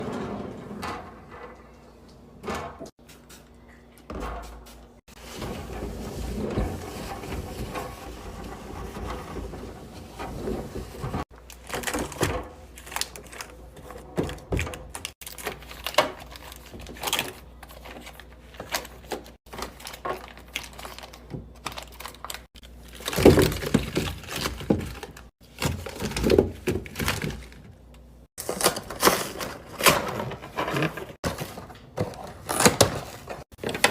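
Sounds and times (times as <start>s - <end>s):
fridge drawers sliding: 0.0s - 1.8s, 5.1s - 15.1s, 28.4s - 33.9s
groceries knocking and clattering: 3.8s - 33.9s.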